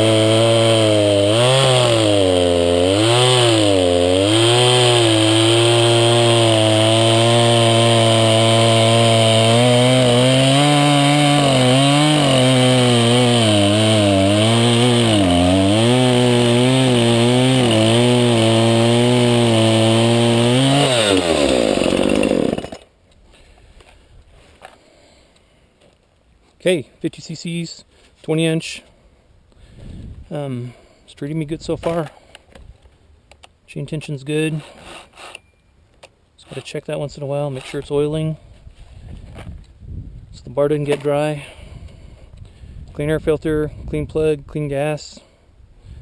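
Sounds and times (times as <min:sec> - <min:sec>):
chainsaw engine revving: 0:00.0 - 0:22.8.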